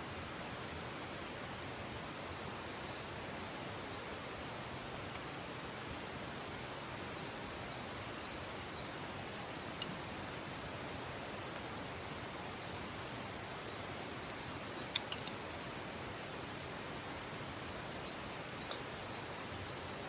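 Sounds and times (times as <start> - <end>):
campfire burning: 0.2 - 20.0
campfire pops: 8.4 - 19.5.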